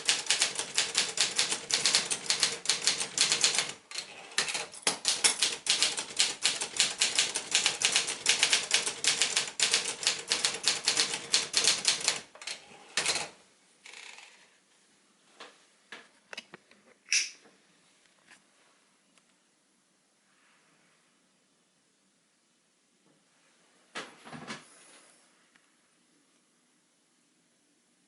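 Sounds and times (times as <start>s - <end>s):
typewriter typing: 0.0s - 14.2s.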